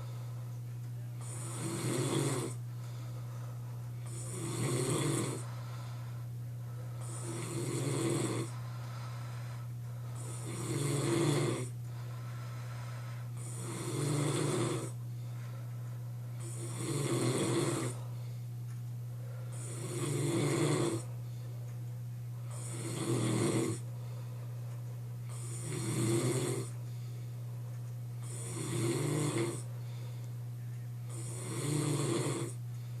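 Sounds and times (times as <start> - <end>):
steady low hum: 0.0 - 33.0
man snoring heavily: 1.2 - 2.6, 4.0 - 5.6, 7.0 - 8.6, 10.2 - 11.7, 13.3 - 15.0, 16.4 - 18.0, 19.5 - 21.1, 22.5 - 23.8, 25.3 - 26.7, 28.2 - 29.7, 31.1 - 32.6.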